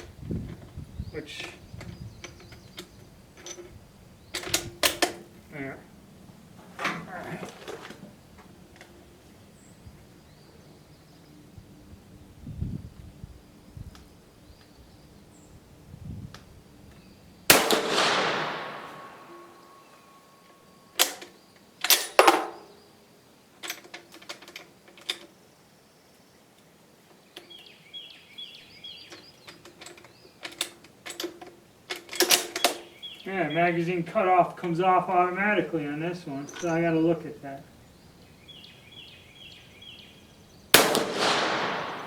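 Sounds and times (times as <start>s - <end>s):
rifle shot echoing: 17.5s - 20.2s, 40.7s - 42.0s.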